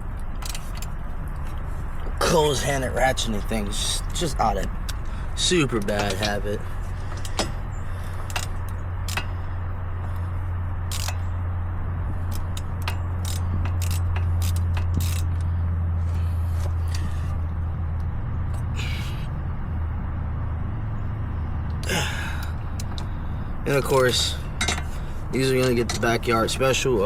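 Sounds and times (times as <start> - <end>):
steady low hum: 0.0 - 27.0
metal hand tools clinking: 5.4 - 7.6, 23.7 - 26.6.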